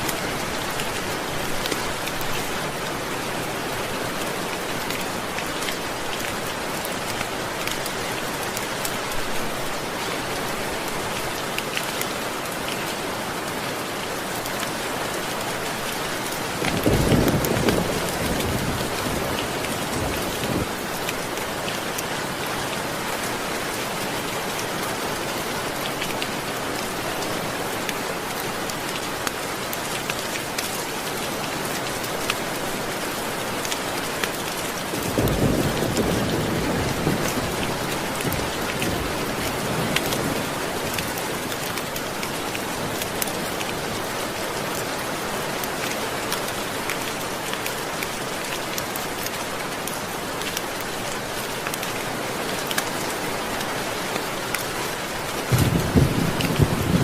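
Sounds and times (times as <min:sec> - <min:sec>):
steady rain falling: 0:00.0 - 0:57.0
low rumble of thunder: 0:16.7 - 0:20.8, 0:35.0 - 0:39.9, 0:55.5 - 0:57.0.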